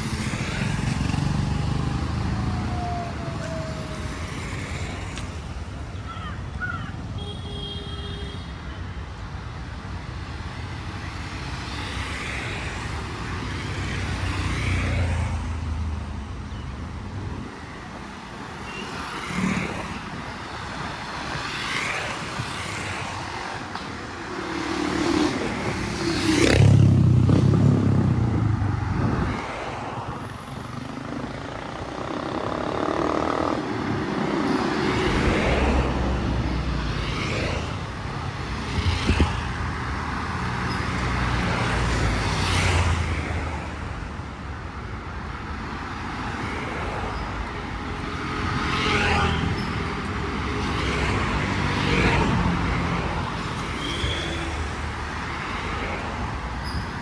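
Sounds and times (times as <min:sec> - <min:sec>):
cars and motorbikes passing: 0:00.0 - 0:07.8, 0:08.4 - 0:57.0.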